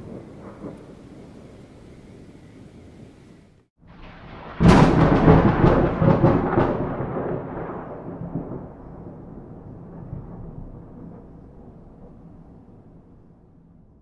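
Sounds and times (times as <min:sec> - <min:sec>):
rain hiss: 0:00.0 - 0:05.4
thunderclap crack and rumble: 0:00.0 - 0:14.0.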